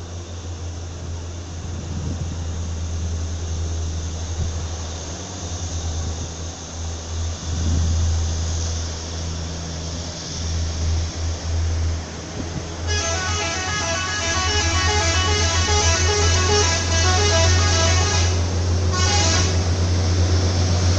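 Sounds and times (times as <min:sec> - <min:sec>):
bus engine droning: 0:00.0 - 0:20.9
multi-tone air horn melody: 0:12.9 - 0:19.6.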